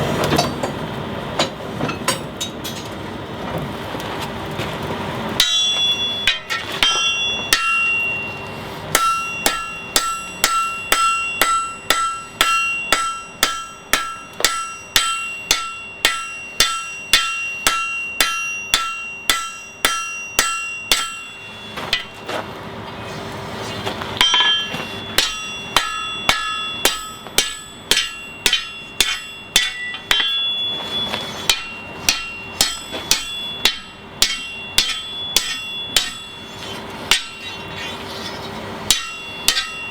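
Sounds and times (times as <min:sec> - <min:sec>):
hammer ringing on anvil: 0:05.4 - 0:22.4, 0:24.2 - 0:37.9, 0:38.9 - 0:39.9.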